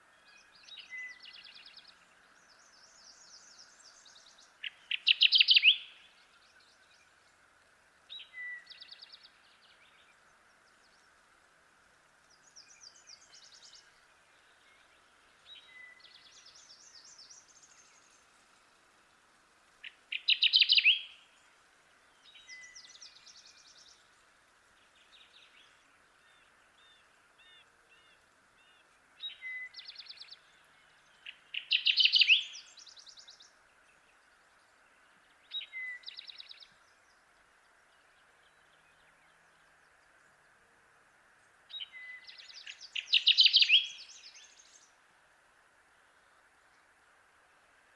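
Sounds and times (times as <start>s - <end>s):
faint hiss: 0.0s - 47.9s
warbler singing: 0.3s - 7.4s, 12.3s - 18.9s, 19.8s - 40.5s, 41.4s - 45.0s.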